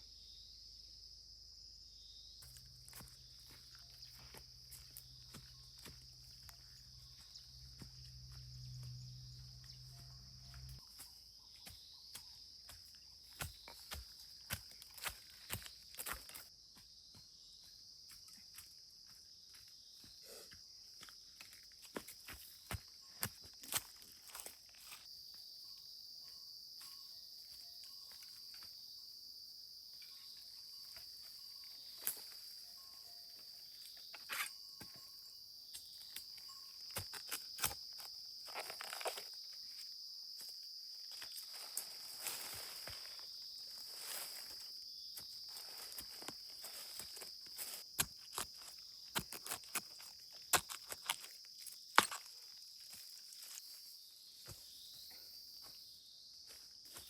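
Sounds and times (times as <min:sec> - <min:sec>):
night insects chirping: 0:00.0 - 0:57.0.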